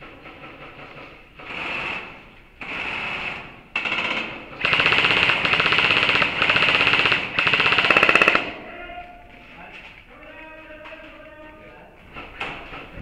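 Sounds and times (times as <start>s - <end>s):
airsoft guns firing full auto: 0.2s - 8.6s.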